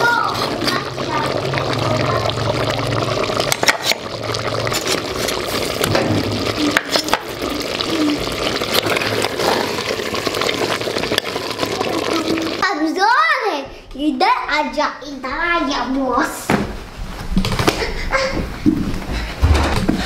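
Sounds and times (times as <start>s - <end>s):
food sizzling and bubbling: 0.0s - 13.0s.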